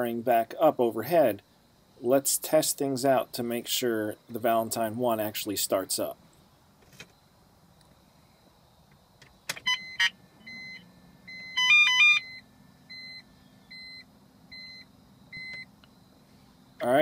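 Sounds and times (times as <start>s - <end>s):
faint electrical hum: 0.0s - 17.0s
electronic start-up tones: 9.7s - 14.0s
short even beeps: 9.7s - 15.7s.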